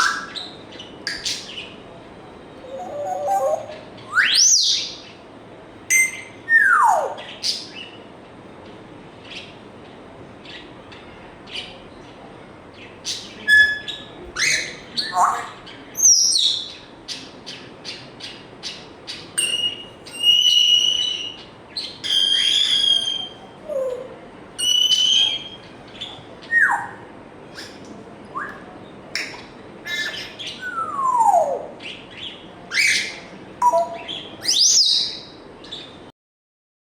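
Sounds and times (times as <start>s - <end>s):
parrot whistling: 0.0s - 0.5s, 2.7s - 5.0s, 5.9s - 7.2s, 13.5s - 16.7s, 19.4s - 21.4s, 22.0s - 25.6s, 26.5s - 27.8s.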